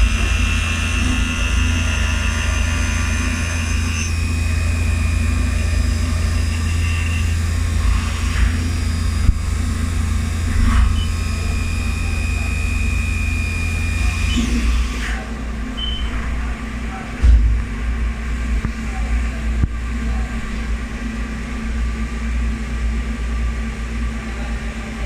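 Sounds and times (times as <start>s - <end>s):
high-pitched spindle whine: 0.0s - 16.5s
milling machine hum: 0.0s - 25.0s.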